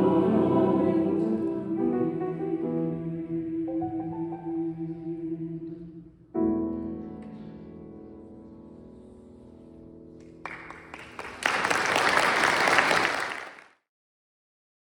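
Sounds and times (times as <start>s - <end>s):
audience applause: 10.4s - 13.7s.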